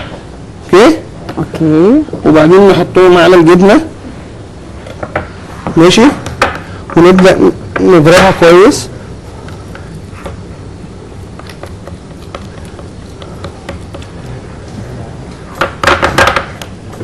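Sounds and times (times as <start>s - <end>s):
utensil tapping and scraping bowl: 11.3s - 14.5s.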